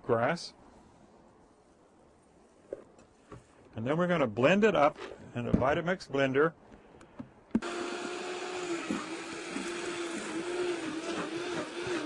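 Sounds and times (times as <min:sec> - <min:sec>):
blender motor whine: 0:07.6 - 0:12.0.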